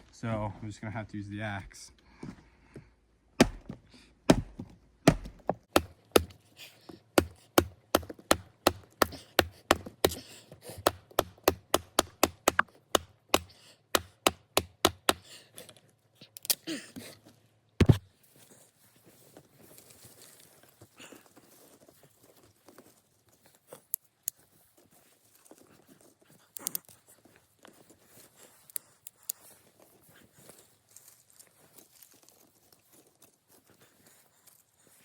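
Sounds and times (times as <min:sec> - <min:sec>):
axe chopping firewood: 0:03.4 - 0:15.4, 0:17.8 - 0:18.1.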